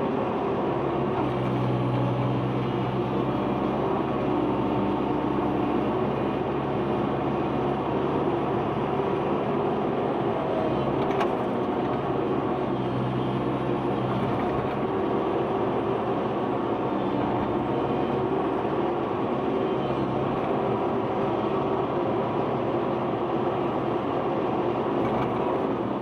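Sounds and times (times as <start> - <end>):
diesel engine droning: 0.0 - 26.0.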